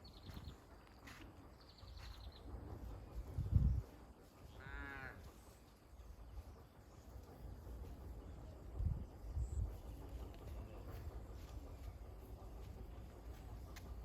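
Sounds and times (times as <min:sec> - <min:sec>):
drawn-out animal call: 0:04.3 - 0:06.2.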